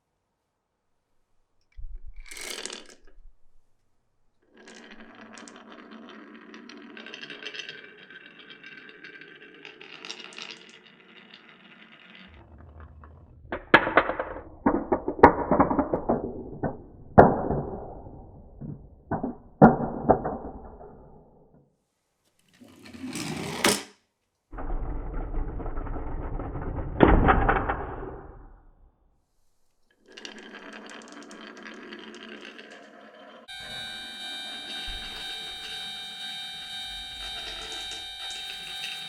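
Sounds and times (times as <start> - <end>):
marbles rolling on wooden track: 1.8 - 3.6, 4.4 - 21.4, 22.6 - 23.8, 24.6 - 28.4, 29.8 - 34.0
marbles clattering and knocking: 1.8 - 3.7, 4.4 - 21.3, 24.6 - 28.3, 29.8 - 33.5.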